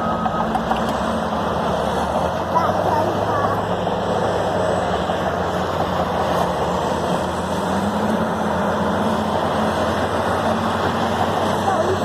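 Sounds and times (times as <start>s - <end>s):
construction site noise: 0.0s - 12.0s
diesel engines running: 0.0s - 12.0s.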